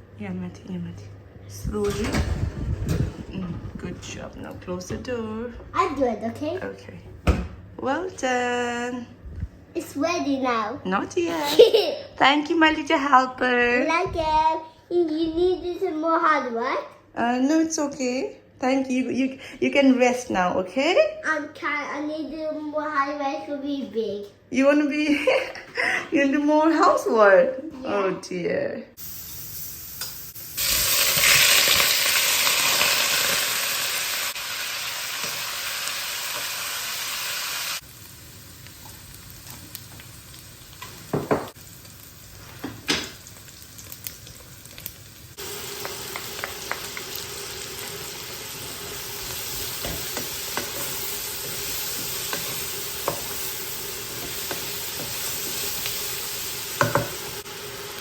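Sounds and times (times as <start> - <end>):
food sizzling in pan: 29.0 - 58.0.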